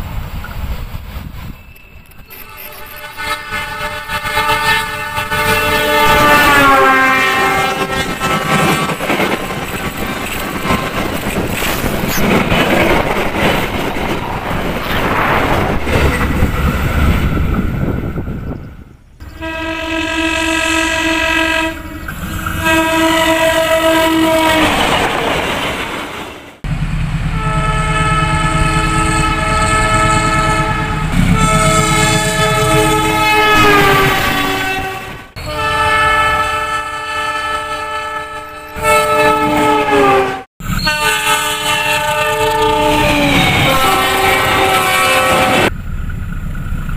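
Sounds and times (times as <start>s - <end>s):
low rumble of train: 0.0s - 46.9s
train horn blast: 2.3s - 9.0s, 19.2s - 24.8s, 27.3s - 45.7s.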